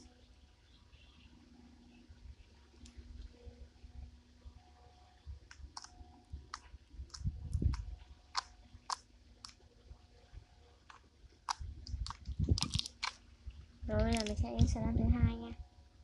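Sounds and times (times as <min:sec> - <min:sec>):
slime squeezed with popping clicks: 0:11.5 - 0:13.2.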